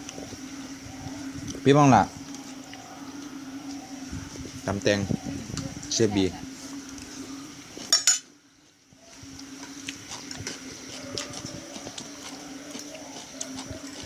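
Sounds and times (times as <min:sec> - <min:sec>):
steady low hum: 0:00.0 - 0:14.0
spoons and dishes clinking: 0:07.9 - 0:08.2.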